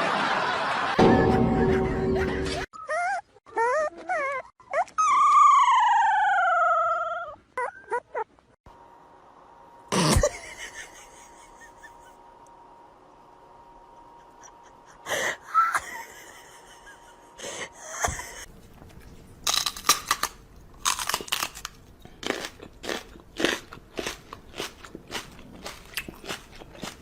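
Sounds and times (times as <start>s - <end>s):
crunchy chewing: 18.5s - 27.0s.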